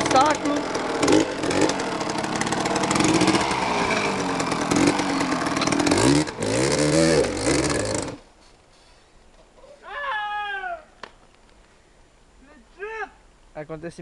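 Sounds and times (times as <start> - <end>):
dirt bike engines revving: 0.0 - 8.2.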